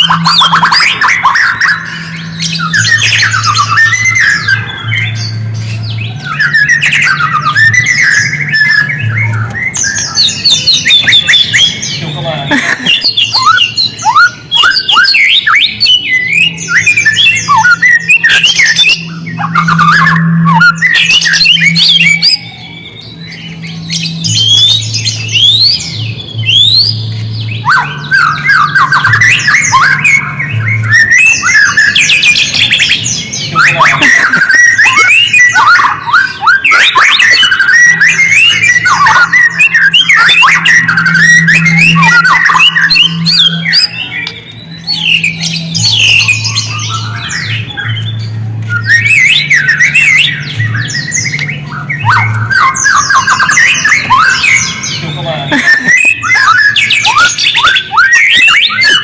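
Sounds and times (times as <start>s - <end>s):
low steady hum: 0.0s - 14.5s
bird singing whistles: 0.0s - 59.0s.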